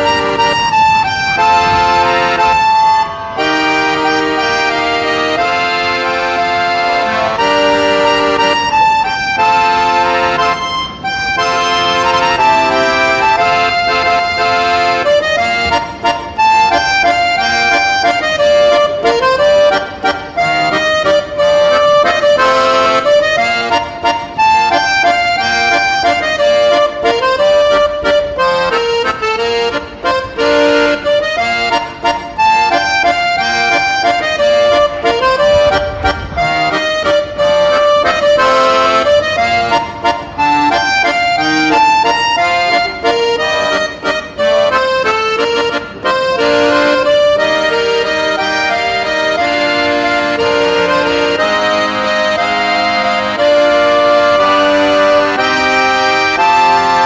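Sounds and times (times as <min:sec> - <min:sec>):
instrumental melody over sustained chords: 0:00.0 - 0:57.0.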